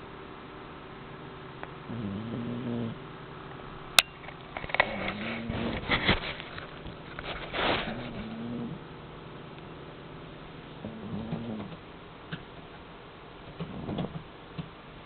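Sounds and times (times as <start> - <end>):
cat snoring: 1.9 - 3.1, 4.9 - 5.8, 7.8 - 8.9, 10.8 - 11.8, 13.6 - 14.2.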